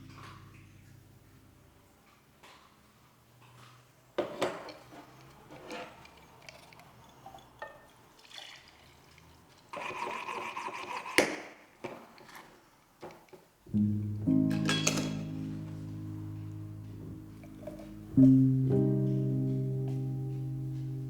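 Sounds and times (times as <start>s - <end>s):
knocks and clinks: 4.2s - 9.4s, 14.4s - 15.7s, 17.3s - 18.4s
liquid running: 4.2s - 12.6s, 14.8s - 18.6s.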